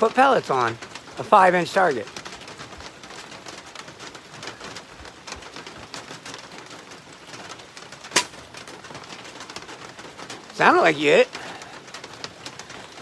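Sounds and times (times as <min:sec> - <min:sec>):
air rifle shot crack: 0:08.1 - 0:08.5.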